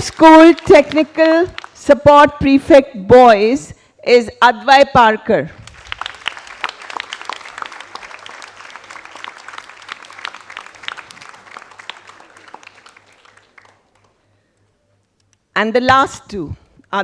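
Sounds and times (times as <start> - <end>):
children clapping: 0.0 - 1.9, 5.6 - 14.2.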